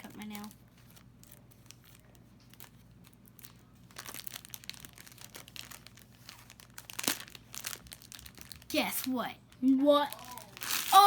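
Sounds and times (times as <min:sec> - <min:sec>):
packaging crinkling and tearing: 0:00.4 - 0:09.2, 0:10.0 - 0:11.0.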